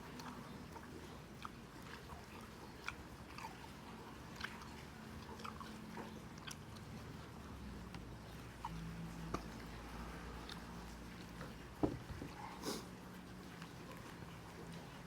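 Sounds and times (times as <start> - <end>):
chewing crispy pork skin: 0.0 - 11.7.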